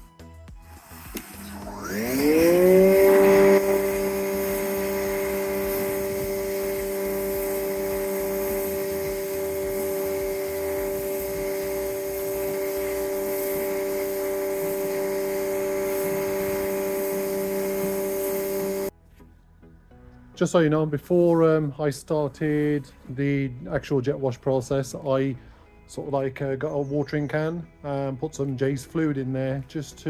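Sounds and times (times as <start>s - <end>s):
pressure washer motor whining: 0.6s - 18.9s.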